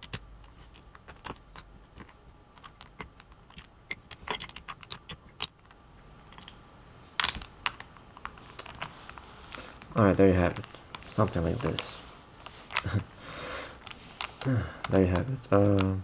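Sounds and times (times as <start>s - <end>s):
plastic puzzle pieces clicking: 0.0s - 6.6s, 7.2s - 9.2s, 13.8s - 16.0s.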